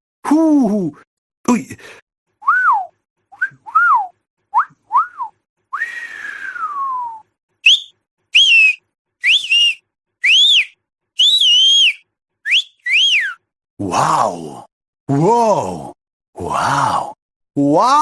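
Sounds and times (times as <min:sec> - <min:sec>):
long downward sliding whistle: 0:02.4 - 0:13.4
short rising-falling whistles: 0:02.4 - 0:13.5.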